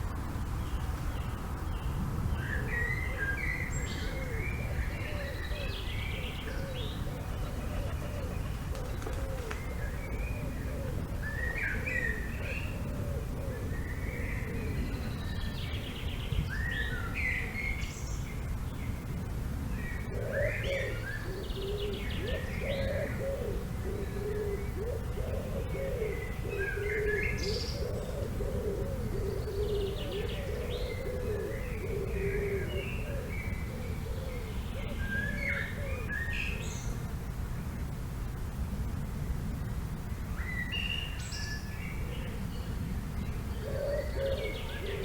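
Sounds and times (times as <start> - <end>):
low continuous warbling call: 0.0 - 16.0, 20.0 - 37.0
low rumble of wind: 0.0 - 45.0
songbirds chirping and trilling: 0.0 - 45.0.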